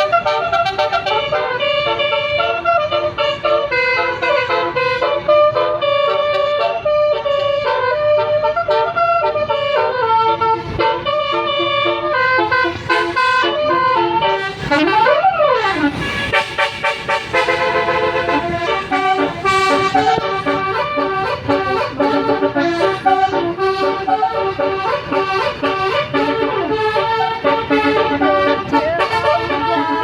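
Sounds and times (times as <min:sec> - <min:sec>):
bus musical horn playing tune: 0:00.0 - 0:30.0.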